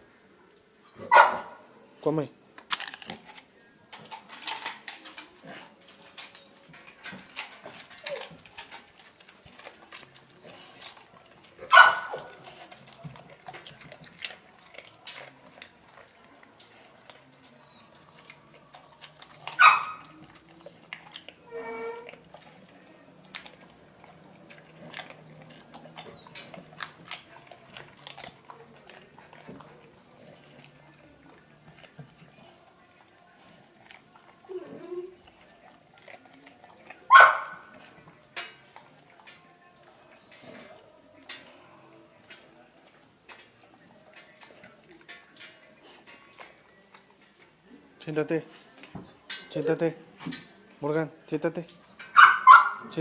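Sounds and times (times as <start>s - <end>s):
dog whining: 0.8s - 1.4s, 6.3s - 9.1s, 17.2s - 20.6s, 21.3s - 22.8s, 23.5s - 26.8s, 34.2s - 35.4s
dog barking: 1.0s - 1.6s, 11.6s - 12.5s, 19.5s - 20.1s, 37.1s - 37.7s, 52.1s - 52.9s.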